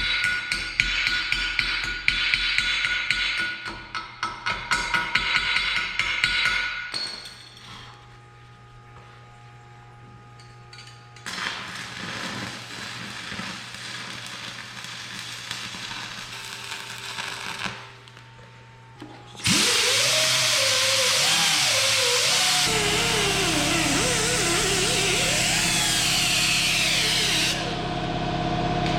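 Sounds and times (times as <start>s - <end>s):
angle grinder grinding steel: 19.4s - 28.0s
steady hum: 20.3s - 28.9s.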